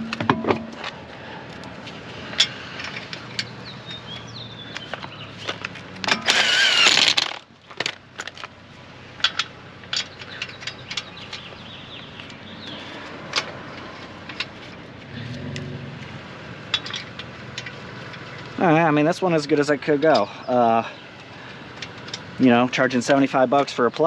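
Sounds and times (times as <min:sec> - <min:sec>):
impact wrench running: 0:06.1 - 0:07.4.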